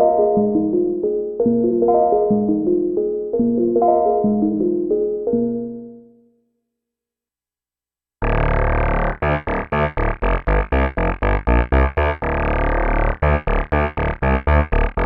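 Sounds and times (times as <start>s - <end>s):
low synth bass: 8.2s - 15.0s
synthesizer staccato notes: 8.2s - 15.0s.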